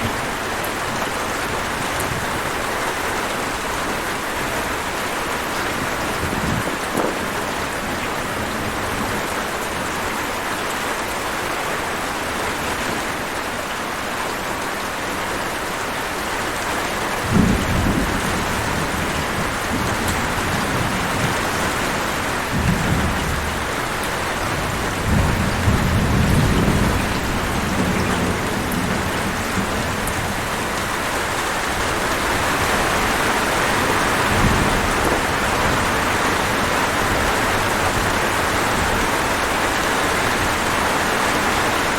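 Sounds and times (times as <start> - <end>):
heavy rain hissing: 13.1 - 41.9
thunder rumbling: 17.1 - 39.5.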